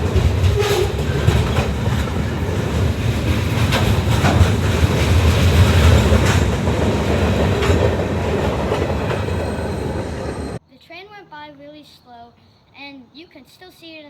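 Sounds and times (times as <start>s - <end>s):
train rumbling past: 0.0s - 10.6s
wheels clacking over rail joints: 0.0s - 10.6s.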